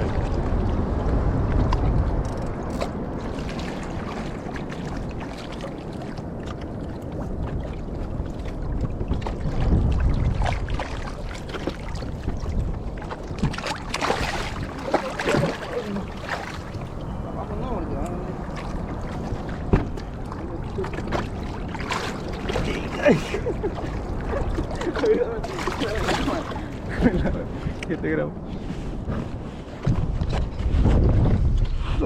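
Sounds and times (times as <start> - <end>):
water around a raft: 0.0 - 32.0
wind rumbling on microphone: 0.0 - 32.0.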